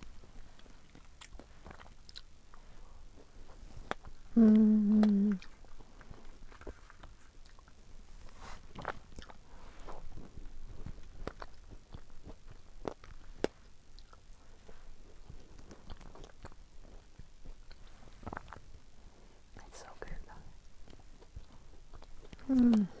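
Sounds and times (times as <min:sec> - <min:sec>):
chewing and biting strawberries: 0:00.2 - 0:19.0, 0:20.0 - 0:23.0
small mouth clicks: 0:03.9 - 0:05.6, 0:22.0 - 0:23.0.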